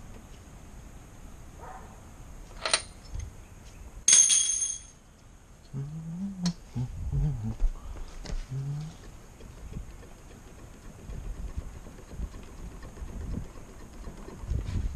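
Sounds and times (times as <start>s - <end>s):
metallic clatter with ringing: 4.1s - 5.0s
short low voice-like sound: 5.7s - 9.0s.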